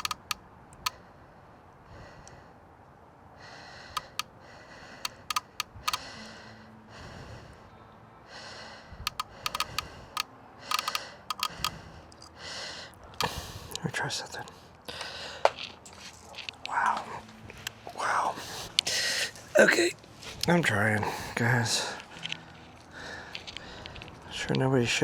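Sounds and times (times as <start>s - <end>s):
wiring connectors clicking: 0.0s - 0.9s, 4.0s - 4.3s, 5.0s - 6.0s, 9.1s - 12.2s
person breathing and sighing: 3.4s - 13.8s, 14.9s - 15.6s, 17.9s - 19.5s, 21.0s - 24.2s.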